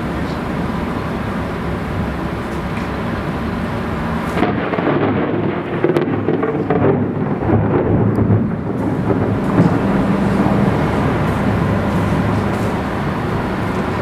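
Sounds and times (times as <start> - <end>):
crackling thunder rumbling: 3.5 - 14.0.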